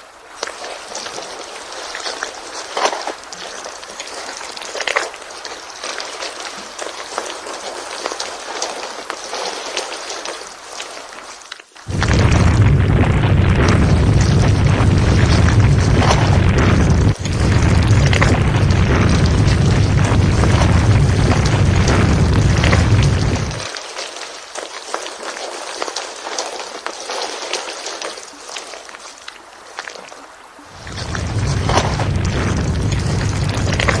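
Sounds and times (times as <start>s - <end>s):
loud crackly low rumble: 11.9s - 23.7s, 30.7s - 34.0s.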